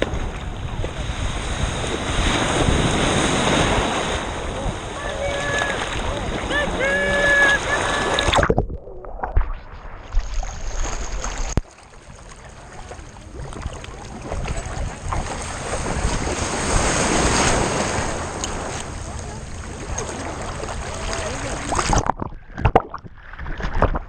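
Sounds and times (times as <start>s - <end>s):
ocean surf: 0.0s - 8.5s, 12.1s - 22.0s.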